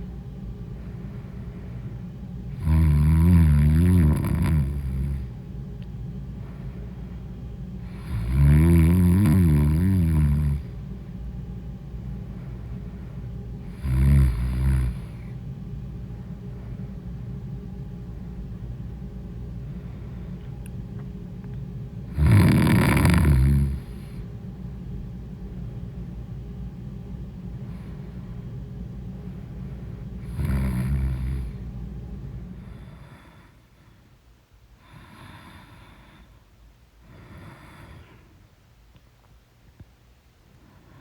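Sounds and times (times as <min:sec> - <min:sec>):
steady low hum: 0:00.0 - 0:41.0
woman snoring: 0:02.5 - 0:05.3, 0:07.8 - 0:10.8, 0:13.6 - 0:15.3, 0:22.1 - 0:24.2, 0:30.2 - 0:31.6, 0:34.8 - 0:36.2, 0:37.1 - 0:38.2.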